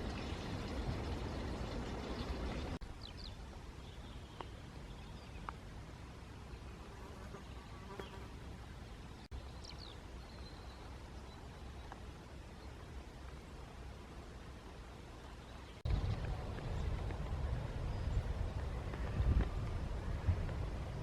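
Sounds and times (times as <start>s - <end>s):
steady low rumble: 15.8s - 21.0s.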